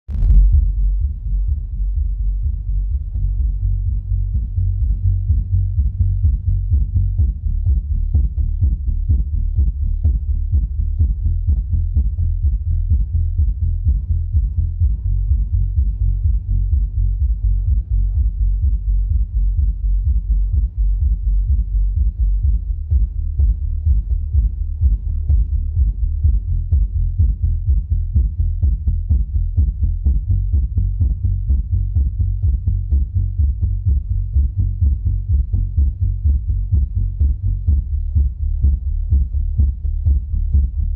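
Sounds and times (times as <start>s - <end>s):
deep bass thumping beat: 0.0s - 40.9s.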